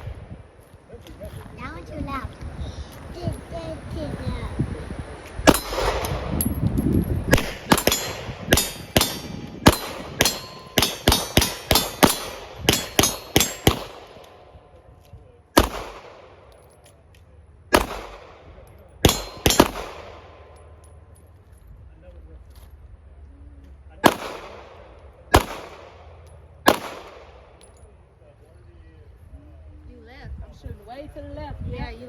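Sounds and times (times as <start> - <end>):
handgun shots: 5.5 - 6.6, 7.3 - 14.7, 15.6 - 16.6, 17.7 - 20.8, 24.0 - 27.7.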